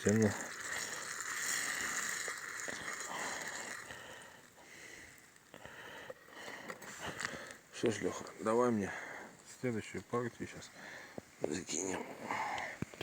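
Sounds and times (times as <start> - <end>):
food frying in hot oil: 0.0 - 4.6.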